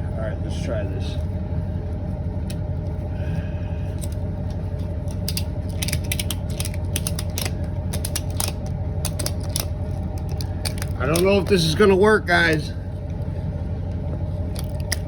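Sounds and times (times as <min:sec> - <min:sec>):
steady low hum: 0:00.0 - 0:15.0
ratchet strap clicking: 0:04.8 - 0:11.4.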